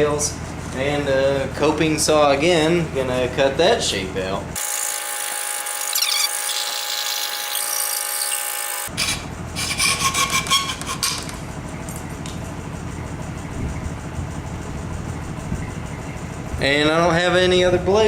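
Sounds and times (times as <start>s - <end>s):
coping saw cutting wood: 4.6s - 11.4s.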